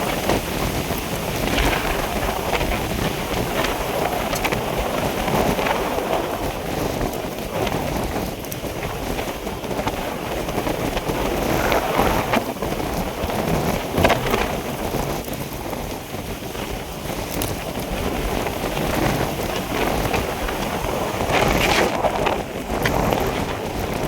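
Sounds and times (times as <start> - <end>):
gusting wind: 0.0 - 24.0
rain: 0.0 - 24.0.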